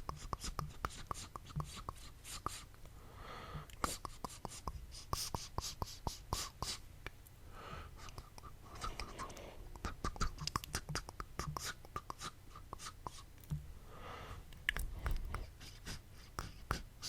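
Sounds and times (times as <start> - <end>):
wet tongue clicks: 0.0 - 2.0, 8.0 - 8.5, 9.7 - 13.2, 14.5 - 15.5
lip smacks: 8.0 - 13.6, 14.5 - 16.9.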